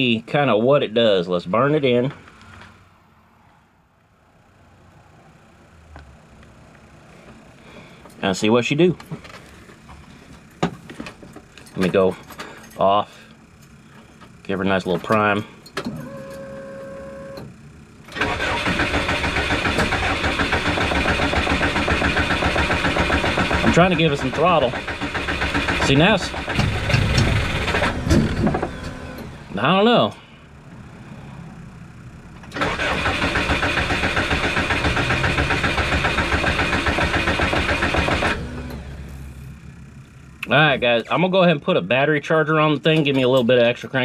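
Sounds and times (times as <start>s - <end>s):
electric fuel pump humming: 9.2s - 40.5s
starter cranking engine: 18.1s - 29.4s, 32.4s - 38.9s.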